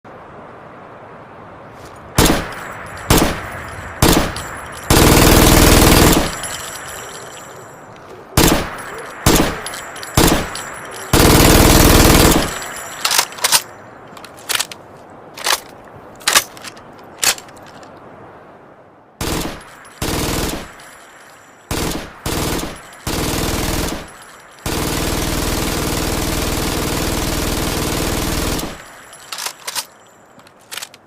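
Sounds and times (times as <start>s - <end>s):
machine gun firing: 2.2s - 6.9s, 8.4s - 13.6s, 19.2s - 20.9s, 21.7s - 29.8s.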